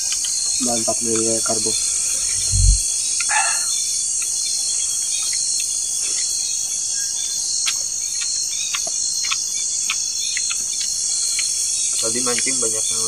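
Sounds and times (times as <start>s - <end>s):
forest insects chorus: 0.0s - 13.0s
low thump: 2.3s - 2.8s.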